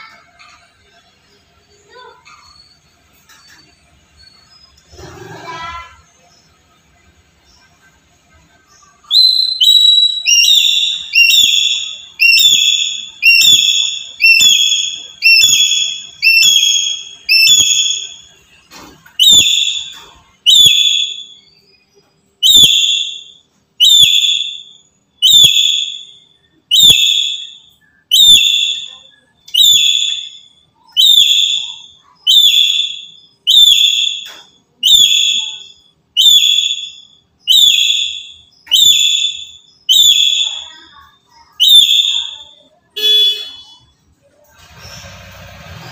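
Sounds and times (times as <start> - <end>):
parrot shrill calls: 9.1 - 18.3, 19.1 - 21.4, 22.4 - 40.9, 41.5 - 43.8.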